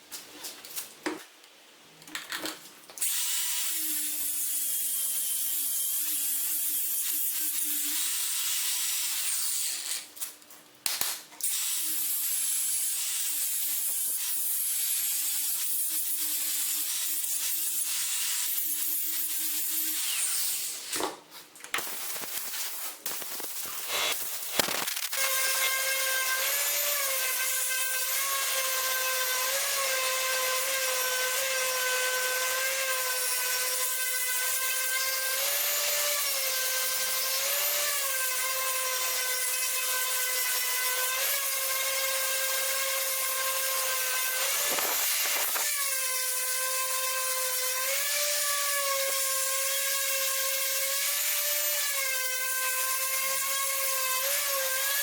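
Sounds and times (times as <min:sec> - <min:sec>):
electric power tool whining: 0:42.6 - 0:45.9
knocks and scraping: 0:44.4 - 0:45.7.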